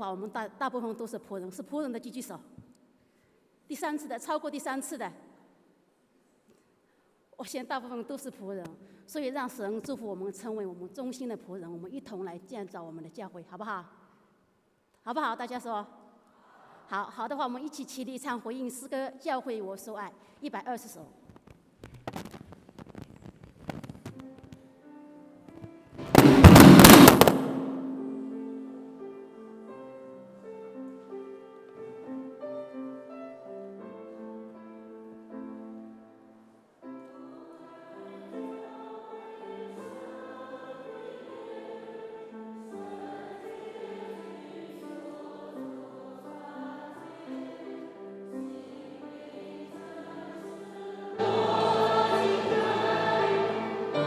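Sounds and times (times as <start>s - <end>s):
loud noise burst: 26.0s - 28.5s
congregation singing a hymn: 37.0s - 54.0s.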